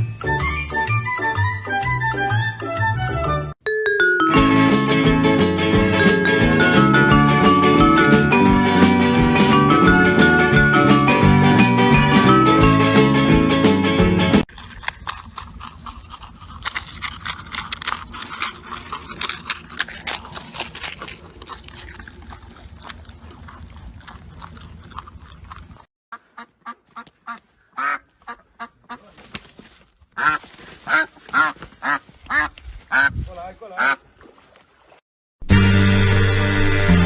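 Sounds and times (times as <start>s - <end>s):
ducks quacking: 26.1s - 29.1s, 30.2s - 34.0s.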